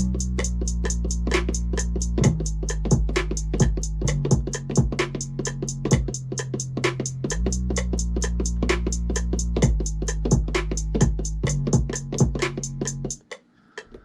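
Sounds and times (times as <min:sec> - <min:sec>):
deep bass notes: 0:00.0 - 0:13.2
hi-hats: 0:00.0 - 0:13.2
kick drum: 0:02.2 - 0:05.0, 0:05.9 - 0:06.2, 0:09.6 - 0:12.4.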